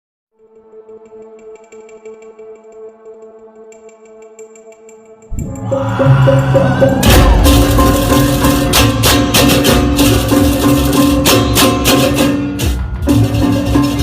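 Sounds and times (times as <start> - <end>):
percussion-led music: 0.4 - 14.0.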